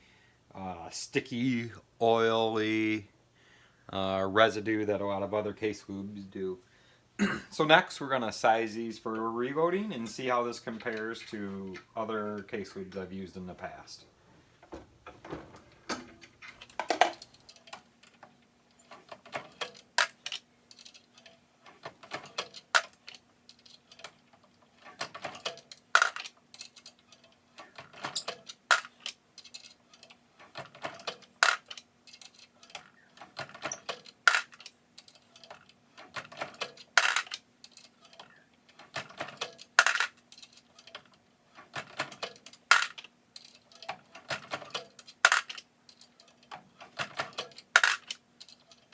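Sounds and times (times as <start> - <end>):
faint steady hum: 0.0 - 48.9
metallic clicks of reloading press: 15.9 - 48.9.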